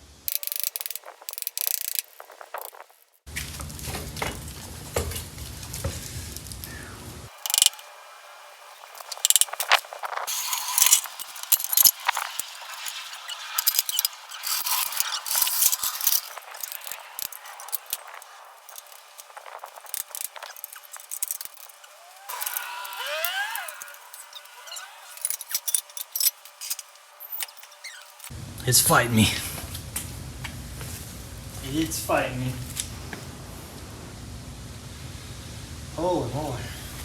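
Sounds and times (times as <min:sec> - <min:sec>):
ratchet rattle: 0:00.3 - 0:02.8, 0:07.4 - 0:07.8, 0:09.0 - 0:09.5, 0:10.3 - 0:28.3.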